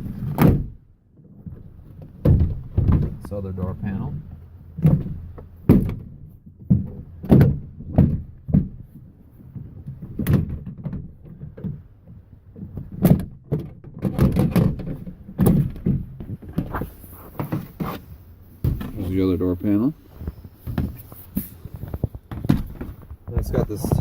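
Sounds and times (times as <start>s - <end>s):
plastic panel knocking and popping: 1.4s - 3.3s, 4.8s - 8.9s, 9.5s - 18.0s, 18.6s - 19.1s, 21.7s - 24.0s.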